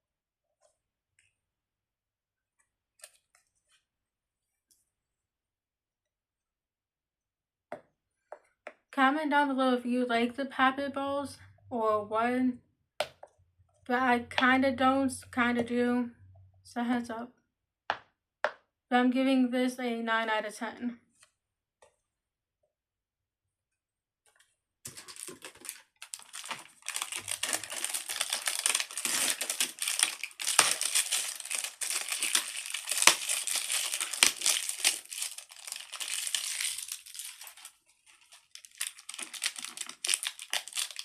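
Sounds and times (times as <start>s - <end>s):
paper packaging crinkling: 24.9s - 41.0s.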